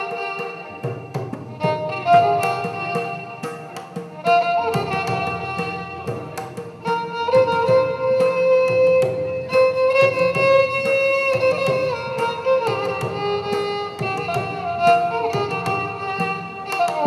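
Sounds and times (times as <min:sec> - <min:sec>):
sharp percussion strokes: 0:00.0 - 0:17.0
violin melody with sliding ornaments: 0:00.0 - 0:17.0.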